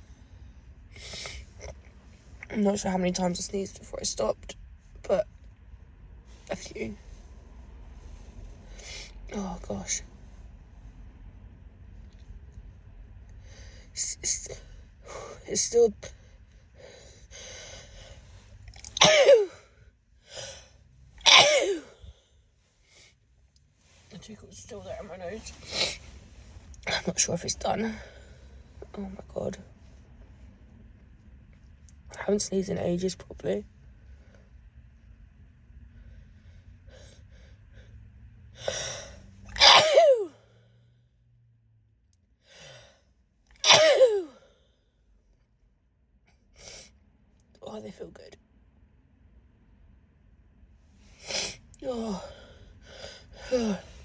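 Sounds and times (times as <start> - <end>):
woman sneezing: 18.8 - 19.6, 21.2 - 22.0, 39.5 - 40.4, 43.6 - 44.4.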